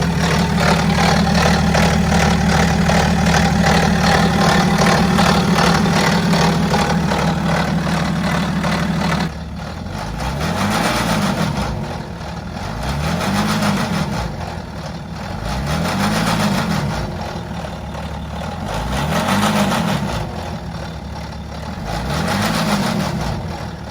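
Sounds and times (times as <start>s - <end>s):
diesel engine revving: 0.0s - 23.9s.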